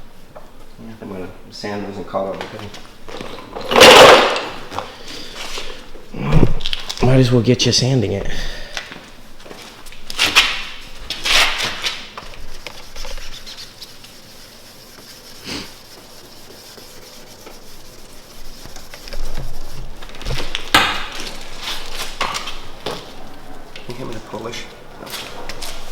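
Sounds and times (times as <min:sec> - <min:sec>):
sandpaper rubbing on paint: 0:10.8 - 0:24.7.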